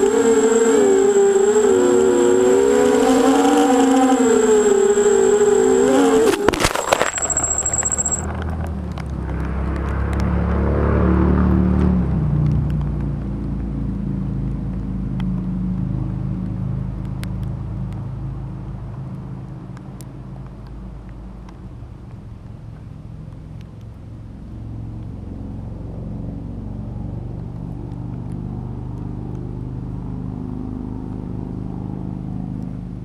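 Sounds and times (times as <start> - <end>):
drone motor whine: 0.0 - 8.3
low steady rumble: 12.0 - 33.0.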